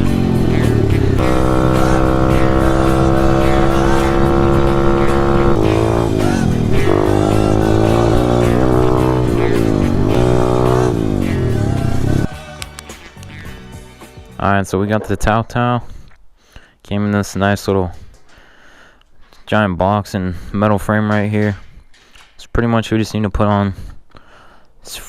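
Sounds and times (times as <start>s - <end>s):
motorcycle engine revving: 0.0s - 12.4s
music playing: 0.0s - 15.2s.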